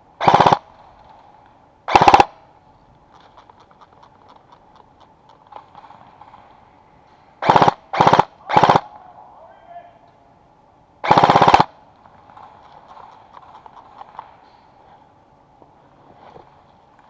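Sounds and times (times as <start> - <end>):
airsoft rifle bursts: 0.2 - 0.7, 1.9 - 2.4, 7.4 - 9.0, 11.0 - 14.4.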